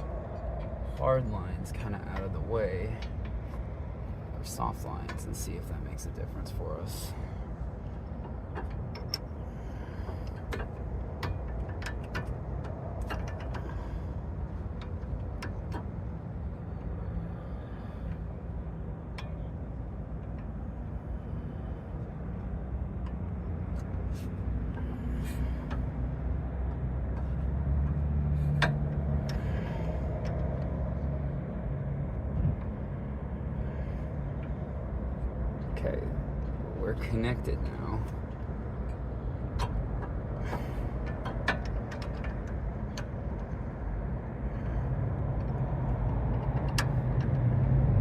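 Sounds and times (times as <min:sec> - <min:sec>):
steady low rumble: 0:00.0 - 0:48.0
metal clicks and knocks: 0:07.8 - 0:17.0, 0:22.3 - 0:30.7, 0:37.6 - 0:44.4, 0:45.3 - 0:48.0.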